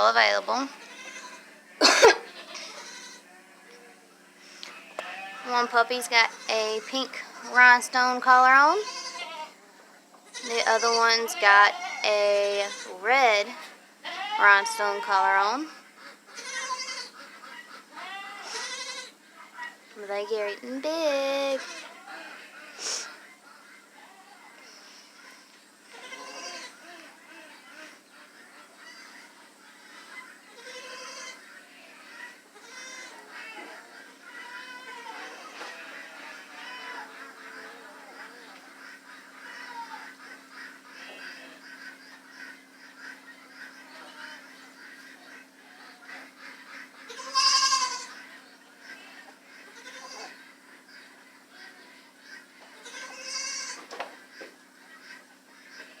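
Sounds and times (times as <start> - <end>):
goat bleating: 0.0 - 3.7, 4.6 - 9.6, 10.2 - 19.8, 21.1 - 23.2, 25.2 - 28.0, 28.8 - 29.2, 30.5 - 38.4, 39.3 - 40.3, 45.9 - 48.3, 48.9 - 50.4, 52.8 - 53.9
faint animal calls: 10.3 - 56.0.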